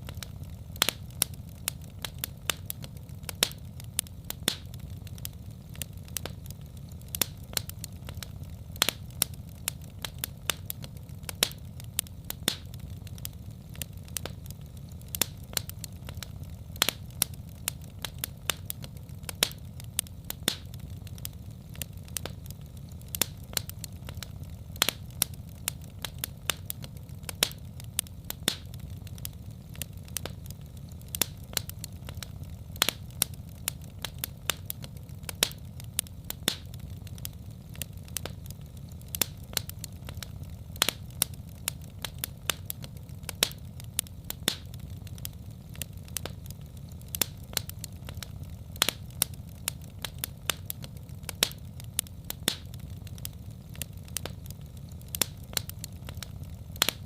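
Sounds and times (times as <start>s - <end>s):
low rumble of burning fire: 0.0s - 57.0s
wood fire popping and snapping: 0.0s - 57.0s.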